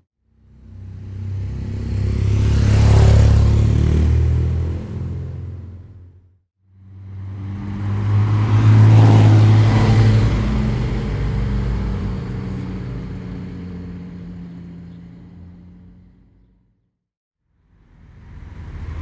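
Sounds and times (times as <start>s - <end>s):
motorcycle engine passing: 0.7s - 5.6s, 7.1s - 16.0s.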